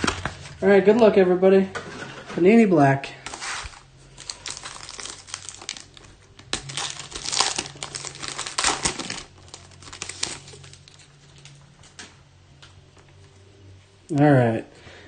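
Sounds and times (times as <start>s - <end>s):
foil wrappers tearing and crinkling: 3.3s - 11.6s.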